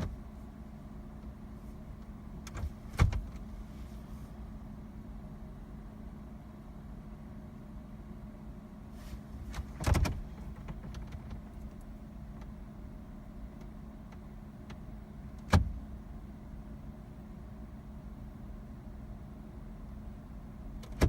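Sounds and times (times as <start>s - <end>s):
clicks and knocks in car: 0.0s - 0.3s, 2.0s - 3.5s, 9.4s - 12.6s, 13.5s - 15.9s, 20.8s - 21.0s
steady low hum: 0.0s - 21.0s.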